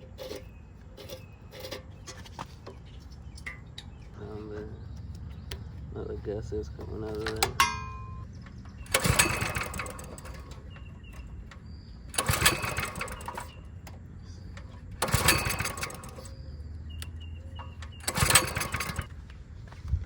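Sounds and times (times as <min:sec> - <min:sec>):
small engine cranking with recoil starter: 0:08.6 - 0:19.1.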